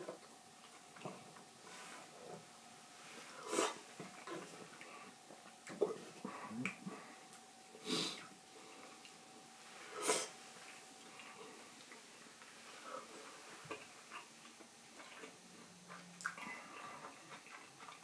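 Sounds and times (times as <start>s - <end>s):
faint steady hum: 0.0s - 18.0s
person slurping and sniffing: 3.2s - 3.8s, 9.8s - 10.3s.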